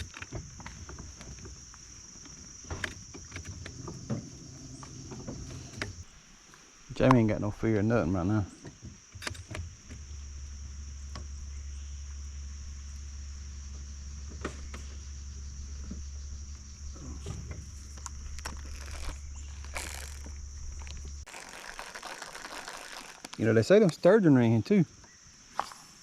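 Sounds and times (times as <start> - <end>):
insects chirping: 0.0 - 26.0
low hum: 9.6 - 21.3.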